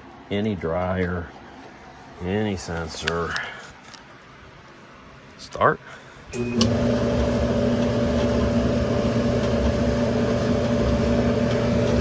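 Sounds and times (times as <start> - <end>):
clothes dryer humming: 6.3 - 12.0.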